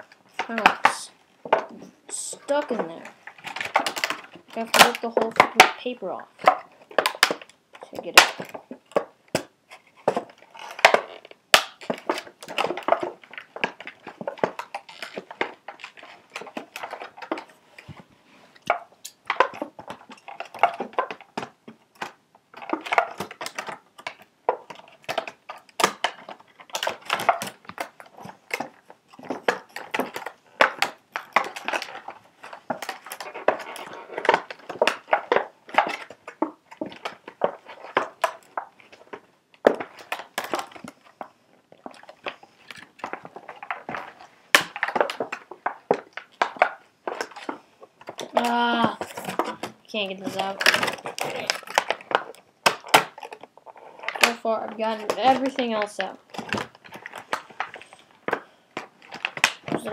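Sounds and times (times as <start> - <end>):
paper and cardboard ripping: 42.6 - 58.4.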